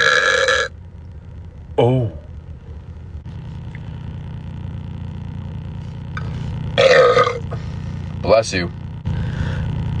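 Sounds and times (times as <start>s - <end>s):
loud burp: 0.0s - 0.7s, 6.8s - 7.6s
steady low rumble: 0.0s - 10.0s.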